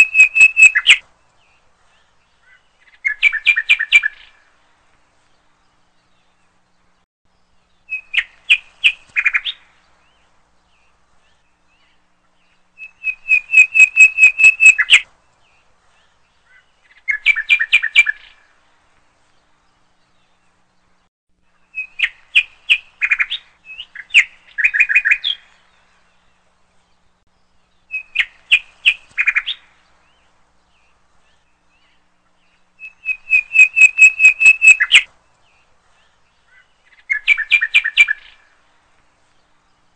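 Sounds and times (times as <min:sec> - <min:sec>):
songbird chirping: 0:00.0 - 0:39.9.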